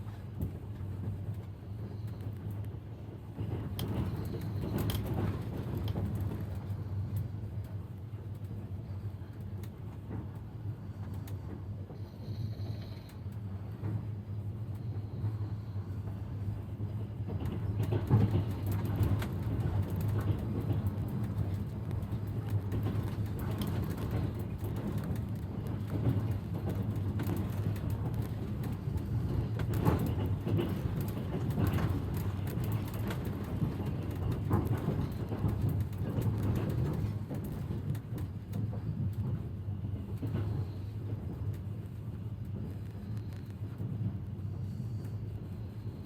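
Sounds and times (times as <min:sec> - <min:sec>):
train rumbling on tracks: 0:00.0 - 0:46.0
wheels knocking on rails: 0:17.2 - 0:41.7.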